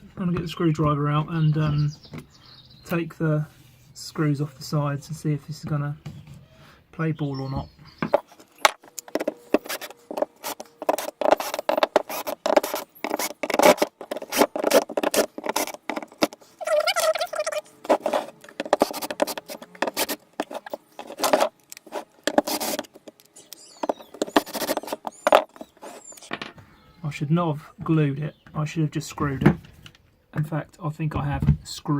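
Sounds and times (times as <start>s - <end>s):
screwdriver scraping and clicking: 8.1s - 26.3s.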